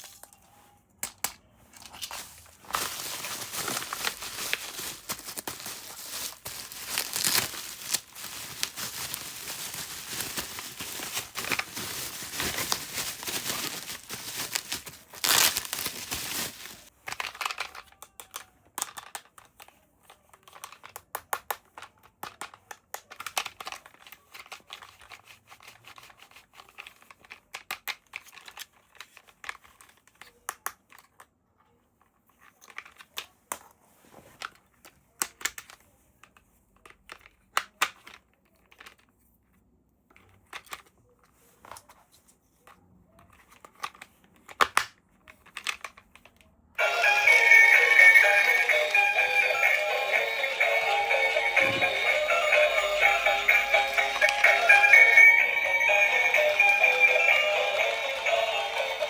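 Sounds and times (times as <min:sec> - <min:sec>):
packaging crinkling and tearing: 0:01.9 - 0:17.7.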